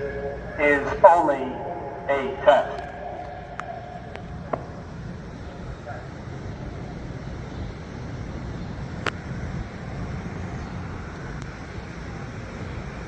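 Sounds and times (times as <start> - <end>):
distant traffic: 0.0 - 13.0
wind: 0.0 - 13.0.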